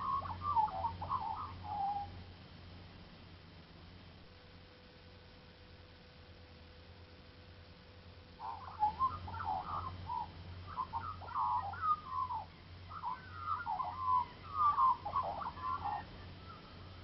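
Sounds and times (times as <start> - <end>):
birds chattering: 0.0 - 2.2, 8.4 - 17.0.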